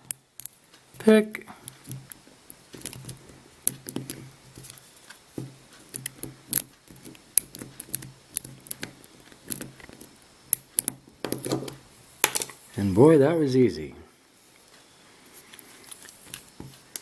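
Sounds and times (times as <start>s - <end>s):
lock pick clicking and scratching: 0.0s - 0.6s, 1.6s - 4.8s, 5.9s - 11.8s.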